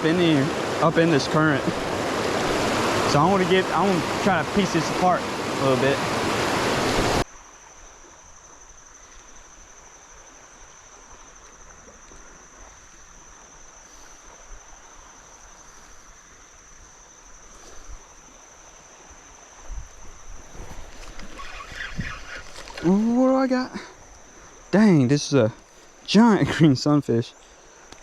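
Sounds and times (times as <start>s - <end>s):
creek water rushing: 0.0s - 7.2s, 20.2s - 28.0s
steady hiss: 0.0s - 11.4s.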